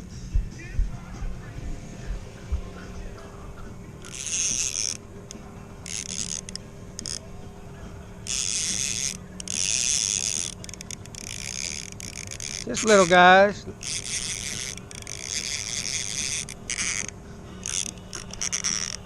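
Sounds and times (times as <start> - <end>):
faint steady hum: 0.0 - 19.0
fishing reel ratcheting: 4.0 - 7.4, 8.2 - 19.0.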